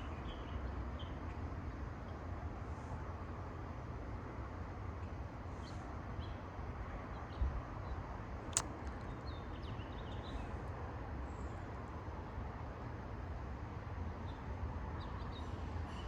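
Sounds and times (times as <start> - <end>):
sharp click: 8.5 - 9.0.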